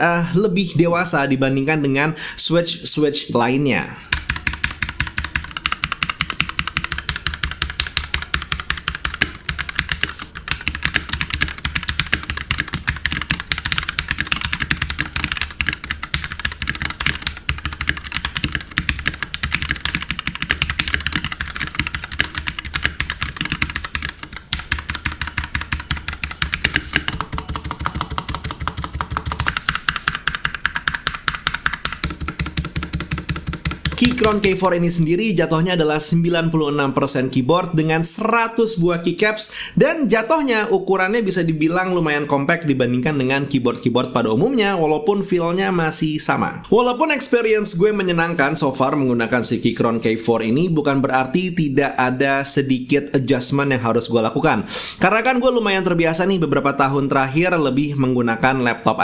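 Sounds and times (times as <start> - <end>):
mechanical keyboard typing: 4.1 - 34.7.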